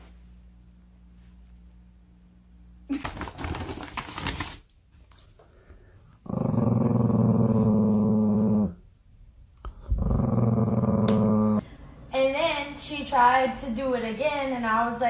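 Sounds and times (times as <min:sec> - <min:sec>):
dog growling: 0:06.2 - 0:08.8, 0:09.6 - 0:11.6.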